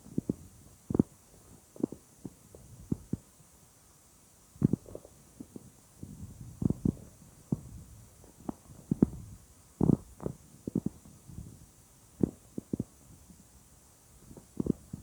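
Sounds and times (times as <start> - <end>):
stomach gurgling: 9.8 - 11.0, 14.4 - 15.0.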